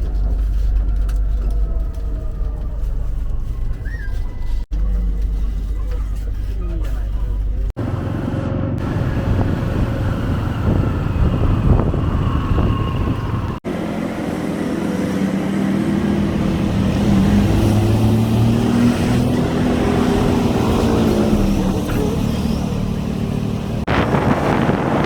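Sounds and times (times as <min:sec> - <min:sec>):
vehicle engine drone: 0:00.0 - 0:25.0.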